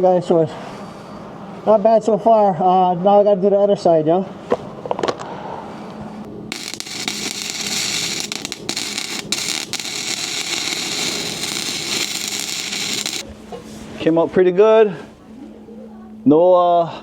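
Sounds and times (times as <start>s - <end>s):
arc welder crackling: 6.5s - 13.2s.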